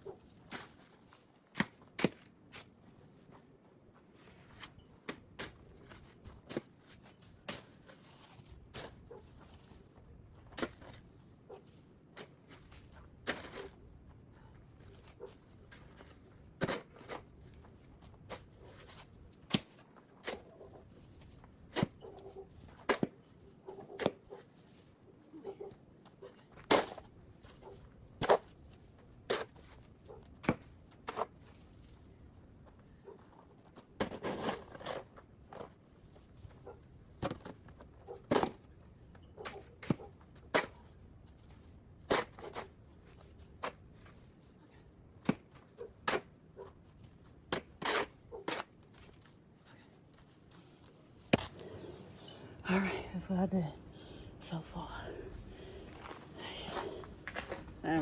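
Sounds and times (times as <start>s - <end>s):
snow shovel scraping and knocking: 4.2s - 9.8s, 12.2s - 13.8s, 34.0s - 35.8s, 51.2s - 52.5s, 55.7s - 58.0s.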